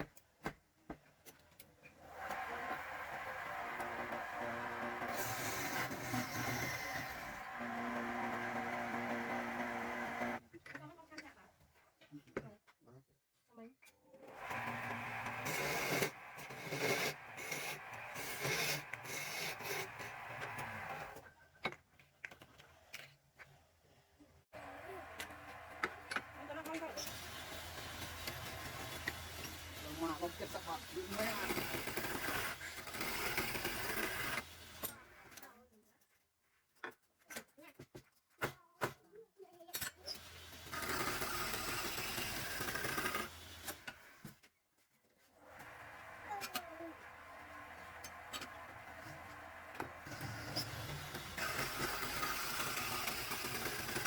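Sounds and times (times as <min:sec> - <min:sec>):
power tool running: 0:02.1 - 0:10.4, 0:14.2 - 0:21.2, 0:24.6 - 0:35.1, 0:40.1 - 0:44.2, 0:45.5 - 0:54.0.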